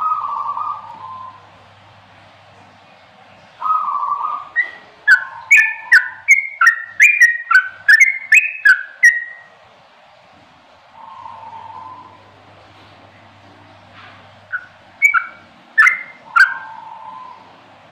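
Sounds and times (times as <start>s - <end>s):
bulbul whistled song: 3.6s - 9.5s, 14.5s - 17.6s.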